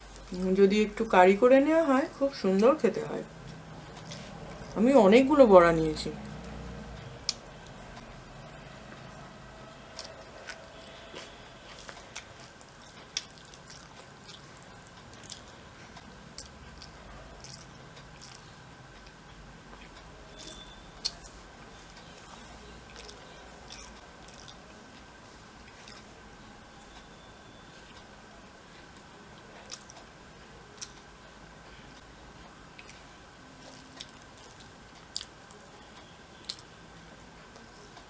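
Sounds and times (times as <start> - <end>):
faint high hum: 0.0 - 38.0
person chewing: 3.5 - 4.8, 9.9 - 15.6, 16.3 - 24.7, 25.6 - 26.1, 29.6 - 30.0, 30.8 - 31.1, 32.8 - 36.7.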